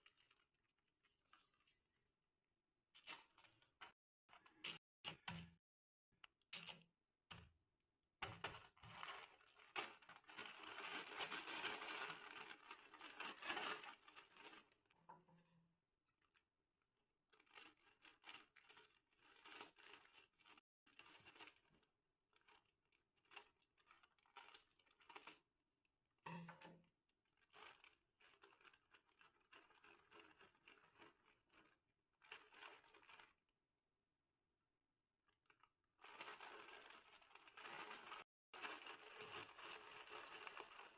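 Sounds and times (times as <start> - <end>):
plastic snack packet crinkling: 0.0 - 1.4, 8.2 - 14.9, 17.3 - 25.5, 27.3 - 33.4, 35.3 - 40.9.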